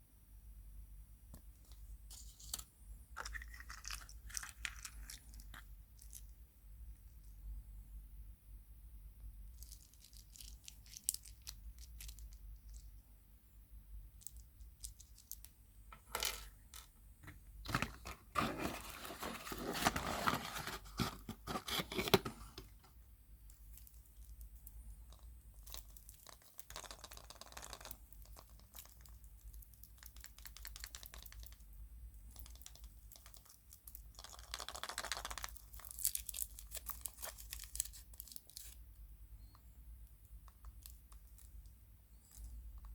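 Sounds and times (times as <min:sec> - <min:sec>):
foil wrapper tearing and crinkling: 0:34.2 - 0:38.8.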